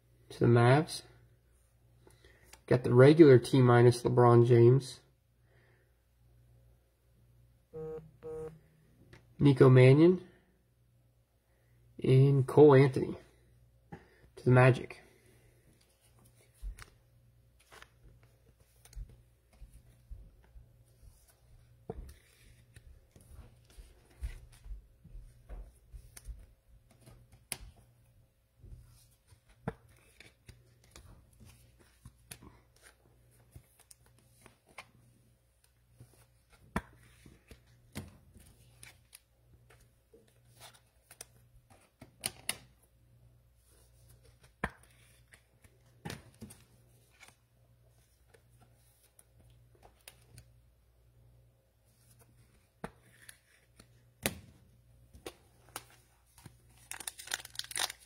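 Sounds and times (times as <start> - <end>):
faint low hum: 5.0 - 12.1
cards clicking and rustling: 15.8 - 17.0, 28.9 - 35.0, 35.6 - 42.8, 44.1 - 47.4, 48.1 - 50.5, 52.0 - 58.0.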